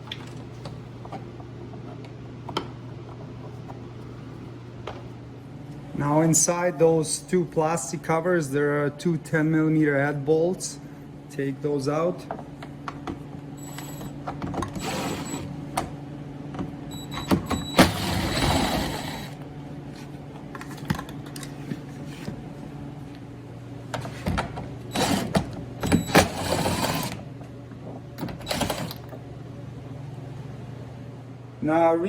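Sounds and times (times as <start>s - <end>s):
steady low hum: 0.0s - 32.0s
power driver whining: 13.6s - 16.0s, 16.9s - 19.4s, 24.9s - 27.3s.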